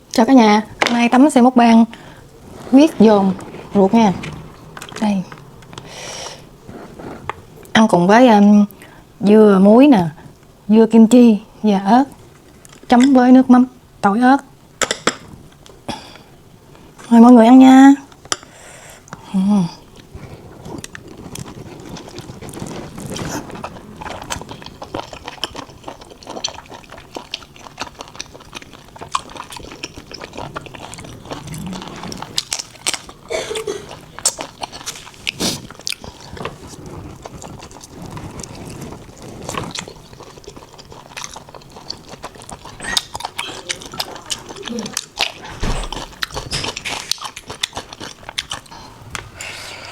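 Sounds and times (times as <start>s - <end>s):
wet chewing mouth clicks: 20.8s - 33.2s, 34.0s - 49.3s.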